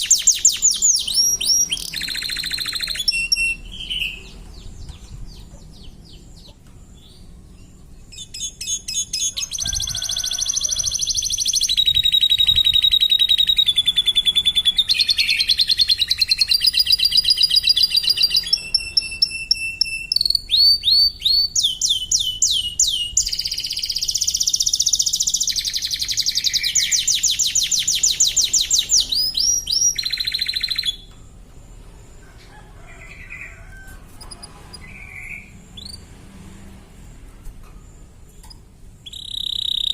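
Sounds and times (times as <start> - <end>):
canary singing trills: 0.0 - 36.2, 38.3 - 39.9.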